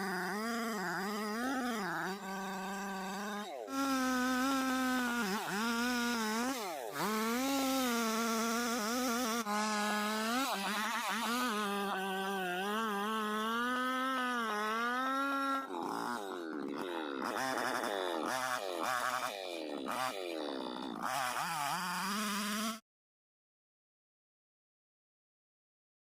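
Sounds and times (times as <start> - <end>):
chainsaw cutting into tree: 0.0 - 22.8.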